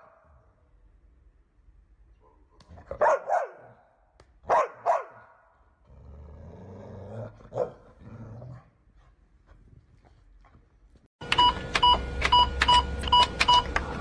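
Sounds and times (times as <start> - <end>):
dog barking: 2.2 - 5.5, 7.5 - 7.8
dog growling: 5.8 - 8.8.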